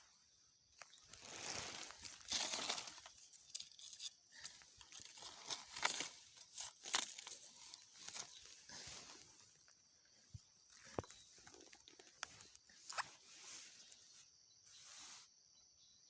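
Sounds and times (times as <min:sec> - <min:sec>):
dry leaves rustling and crunching: 0:00.9 - 0:03.8, 0:05.0 - 0:09.5.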